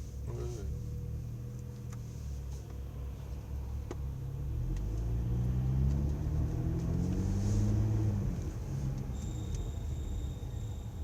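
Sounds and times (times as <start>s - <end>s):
car engine revving up: 3.5s - 9.2s.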